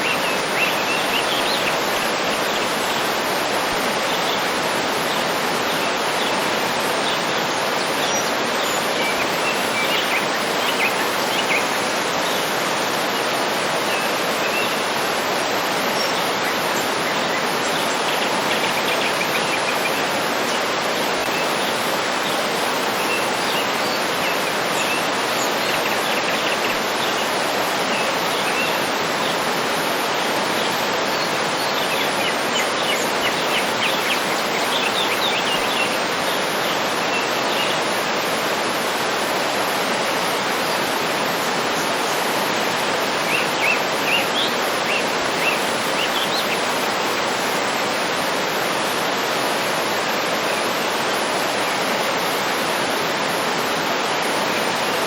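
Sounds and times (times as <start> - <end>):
waterfall rushing: 0.0 - 55.0
birds chirping: 30.4 - 38.3, 41.7 - 47.9.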